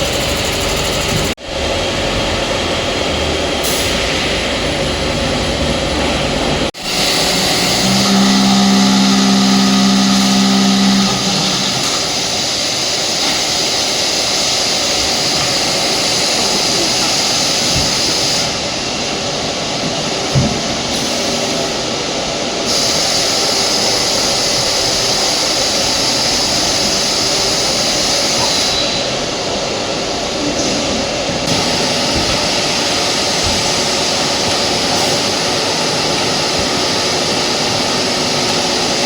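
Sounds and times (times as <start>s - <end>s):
steady hum: 0.0s - 20.9s
hydraulic press machinery running: 0.0s - 39.0s.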